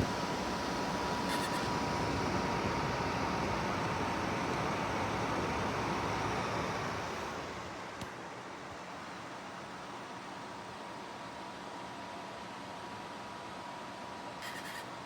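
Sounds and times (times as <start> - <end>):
tower fan running: 0.0 - 11.3.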